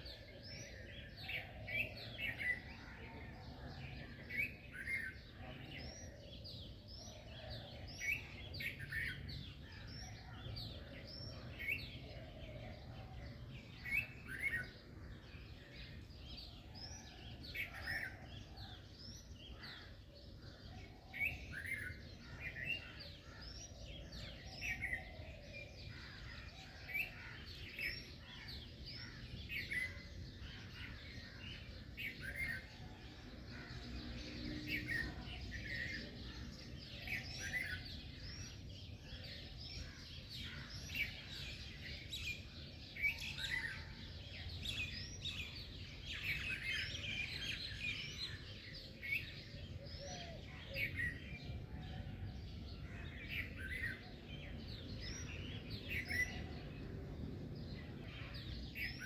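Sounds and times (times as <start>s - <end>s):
songbirds chirping: 0.0s - 59.0s.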